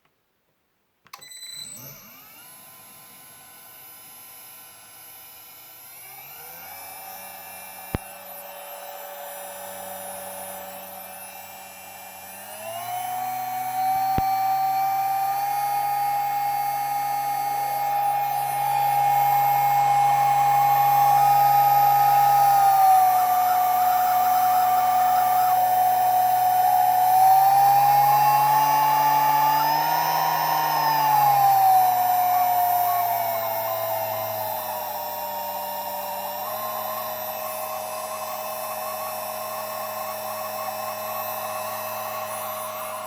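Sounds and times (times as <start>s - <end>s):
spindle motor high-pitched squeal: 12.6s - 34.4s.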